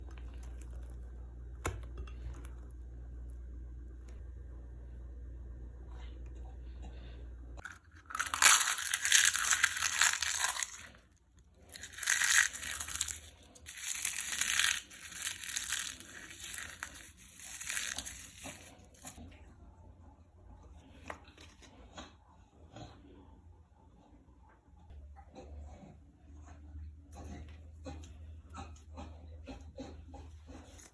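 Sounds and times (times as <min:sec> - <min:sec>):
low hum: 0:00.0 - 0:20.8.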